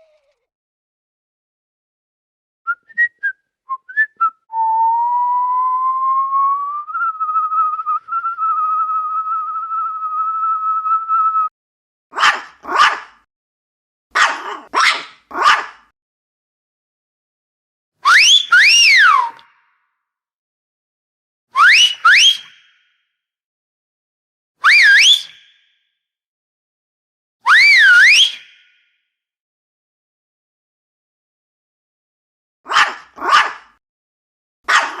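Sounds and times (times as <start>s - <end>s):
person whistling: 2.7s - 11.5s
dog barking: 12.1s - 13.2s, 14.1s - 15.9s, 32.7s - 33.8s, 34.6s - 35.0s.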